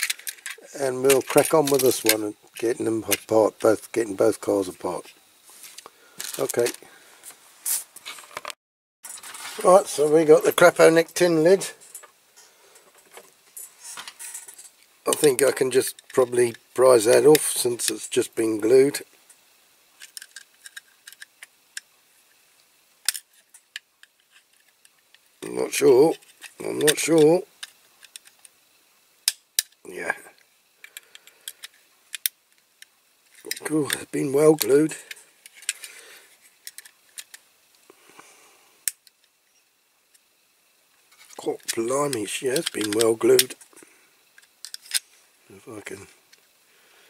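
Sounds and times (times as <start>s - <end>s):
hand tool clicking and scraping: 41.1s - 43.8s, 44.4s - 45.1s.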